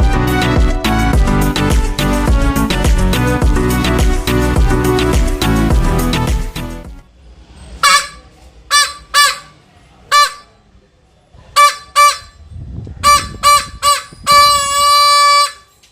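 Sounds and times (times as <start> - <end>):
air horn honks: 7.8 - 10.6, 11.5 - 15.8.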